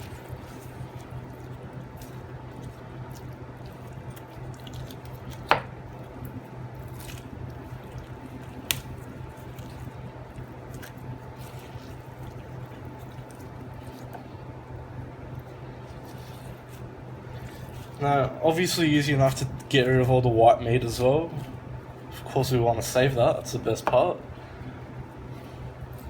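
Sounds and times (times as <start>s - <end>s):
steady low hum: 0.0s - 26.0s
knife slicing chicken: 1.8s - 5.8s.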